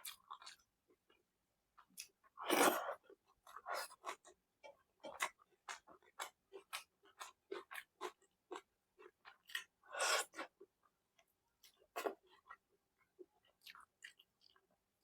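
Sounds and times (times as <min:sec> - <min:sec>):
person chewing food: 0:00.0 - 0:01.2, 0:01.8 - 0:10.7, 0:11.6 - 0:14.7.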